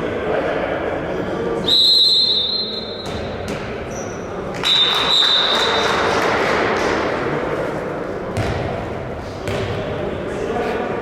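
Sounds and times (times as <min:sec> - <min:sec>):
referee's whistle blasts: 0:01.6 - 0:03.3
ball bouncing knocks: 0:08.3 - 0:09.9.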